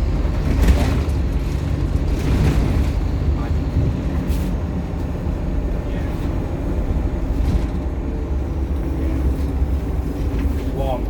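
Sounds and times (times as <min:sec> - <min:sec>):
bus engine droning: 0:00.0 - 0:11.0.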